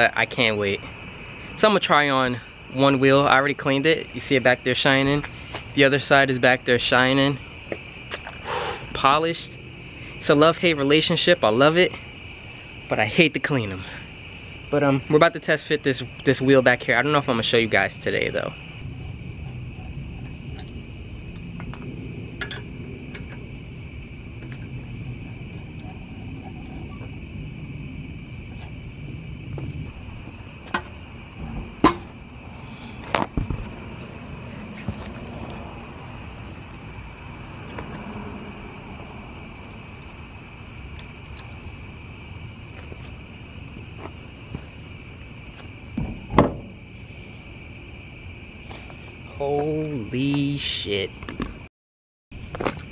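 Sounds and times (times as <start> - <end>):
crickets chirping: 0.0 - 51.7, 52.3 - 52.9
wheel knocks and clanks: 29.5 - 32.4, 33.0 - 35.4, 46.0 - 46.9.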